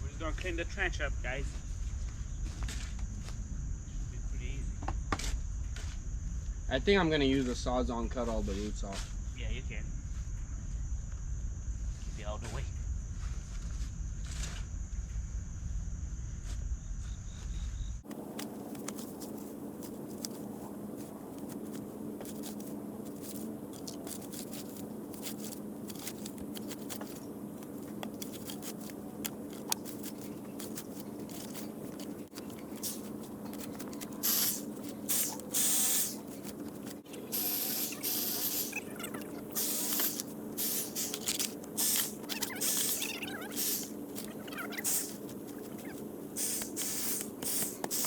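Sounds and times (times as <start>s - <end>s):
shovels scraping dirt: 18.0s - 48.0s.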